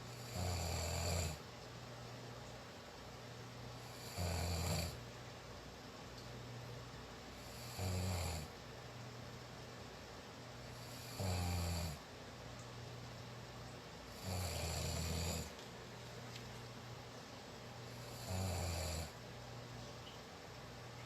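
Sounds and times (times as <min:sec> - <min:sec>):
faint steady hum: 0:00.0 - 0:21.0
person snoring: 0:00.1 - 0:01.4, 0:03.8 - 0:05.0, 0:07.4 - 0:08.5, 0:10.8 - 0:12.0, 0:14.1 - 0:15.5, 0:17.9 - 0:19.1.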